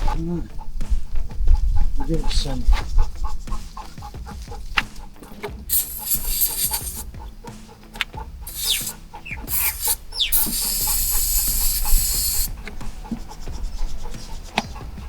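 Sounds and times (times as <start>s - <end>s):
aerosol can spraying: 1.9s - 15.0s
short squeaky chirps: 8.5s - 12.8s.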